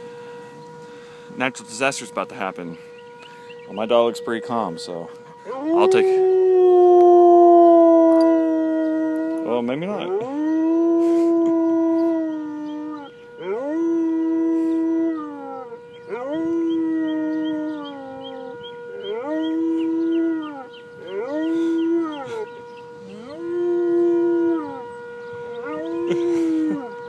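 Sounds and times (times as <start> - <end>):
tornado sirens wailing: 0.0 - 27.0
dog howling: 5.4 - 27.0.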